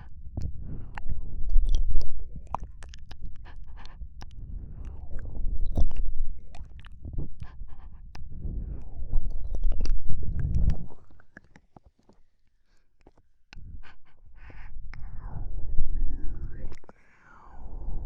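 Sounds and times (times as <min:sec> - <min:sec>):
soft breathing on microphone: 0:00.0 - 0:01.4, 0:02.0 - 0:11.3, 0:12.0 - 0:18.0
wet mouth clicks and smacks: 0:00.4 - 0:12.2, 0:16.6 - 0:17.0.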